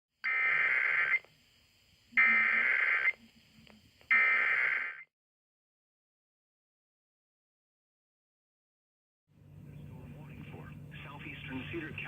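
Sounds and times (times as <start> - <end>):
warbling digital data tones: 2.2 - 3.2.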